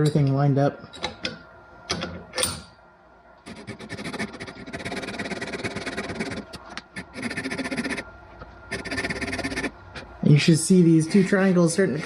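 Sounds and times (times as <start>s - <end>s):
saw cutting wood: 11.0s - 12.0s.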